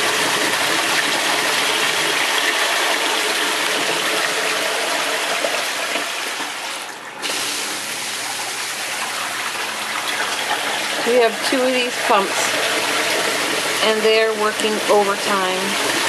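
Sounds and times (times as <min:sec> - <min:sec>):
water gushing in a sump pit: 0:00.0 - 0:16.0.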